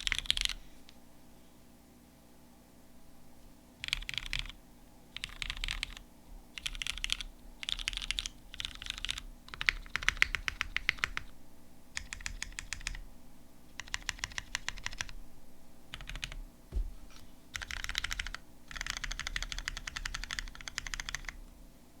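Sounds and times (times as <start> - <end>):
mechanical keyboard typing: 0.0 - 0.6, 3.8 - 4.6, 5.2 - 6.0, 6.6 - 11.3, 12.0 - 13.0, 13.8 - 15.2, 15.9 - 16.4, 17.5 - 21.4
low thud: 16.7 - 17.1.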